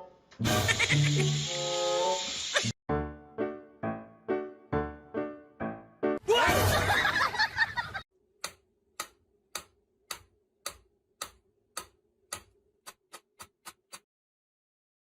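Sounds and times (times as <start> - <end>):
sharp even ticks: 8.4 - 14.0.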